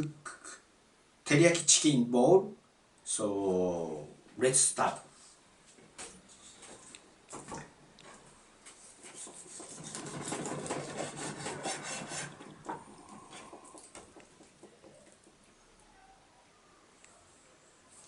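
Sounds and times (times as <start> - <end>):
rough rubbing and rasping: 9.0 - 13.8.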